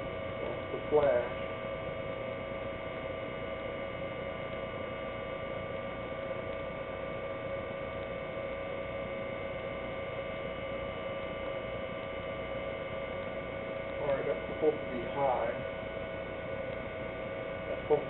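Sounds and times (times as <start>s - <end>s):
electrical hum with high tones: 0.0s - 18.0s.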